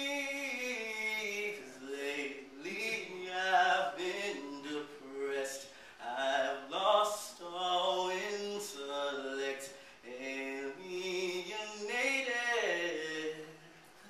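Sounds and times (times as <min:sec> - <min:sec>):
man singing slow song: 0:00.0 - 0:14.0
singer breathing: 0:05.6 - 0:06.0, 0:09.7 - 0:10.1.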